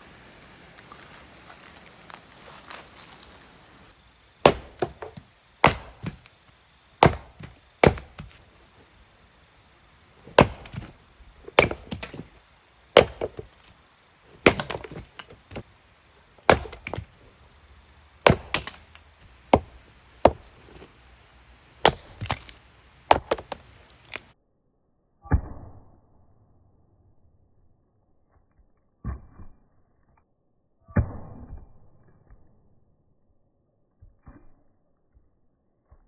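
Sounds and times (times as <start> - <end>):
wood splintering crackle: 0.4 - 8.9, 10.2 - 15.6, 16.3 - 17.6, 18.2 - 20.9, 21.7 - 24.3
woody chopping strikes: 4.4 - 6.4, 7.0 - 8.8, 10.2 - 12.4, 13.0 - 13.7, 14.3 - 15.6, 16.4 - 17.4, 18.2 - 20.9, 21.8 - 24.3.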